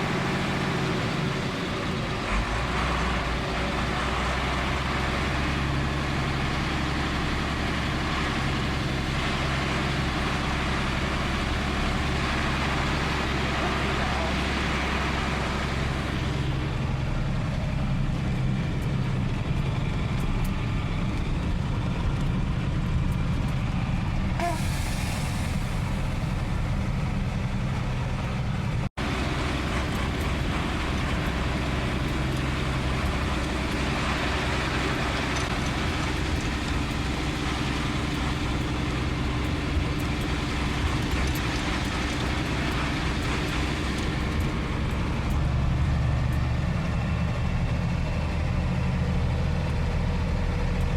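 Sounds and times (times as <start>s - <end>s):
diesel truck engine running: 0.0s - 50.9s.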